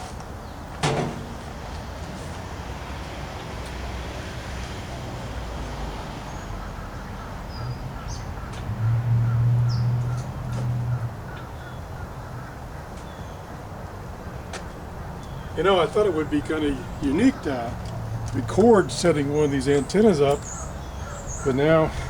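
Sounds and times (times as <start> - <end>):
birds chirping and calling: 6.3 - 8.7, 9.3 - 22.0
low engine drone: 15.5 - 22.0.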